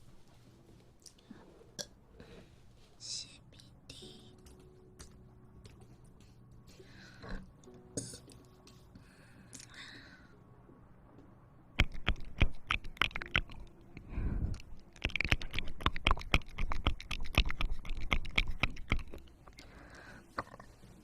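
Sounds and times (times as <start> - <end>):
person chewing crunchy food: 11.8 - 13.7, 14.5 - 19.7.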